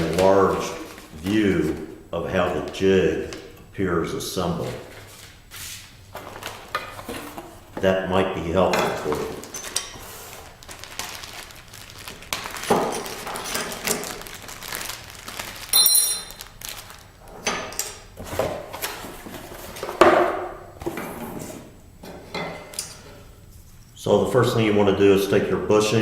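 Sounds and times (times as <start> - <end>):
metal part ringing ping: 15.8 - 16.4
metal parts knocking and clattering: 15.8 - 16.4.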